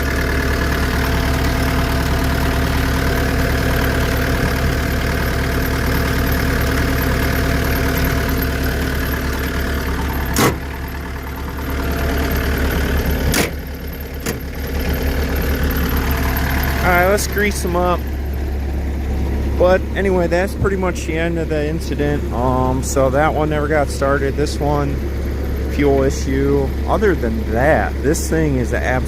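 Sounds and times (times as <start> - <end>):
diesel engine idling: 0.0 - 29.0.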